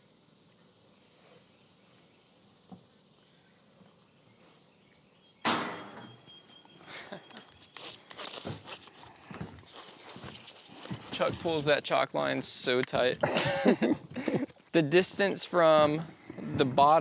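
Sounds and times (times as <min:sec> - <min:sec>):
knocks and rattles: 0:05.5 - 0:06.3.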